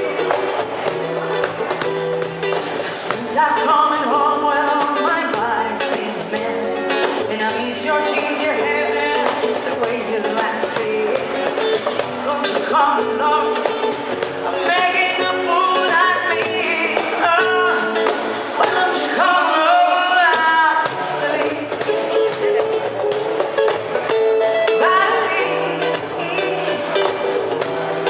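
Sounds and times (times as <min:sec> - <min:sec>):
steady bass line: 0:00.0 - 0:07.9
guitar: 0:00.0 - 0:28.0.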